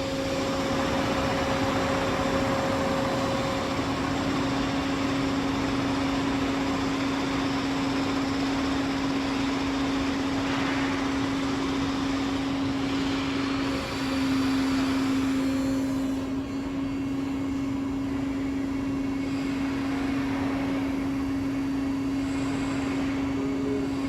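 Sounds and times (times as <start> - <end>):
lathe machine drone: 0.0 - 24.0.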